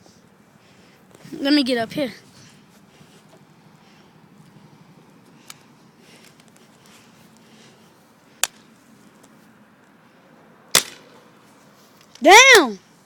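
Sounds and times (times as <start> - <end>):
bb gun firing crack: 8.4 - 8.7, 10.7 - 11.2.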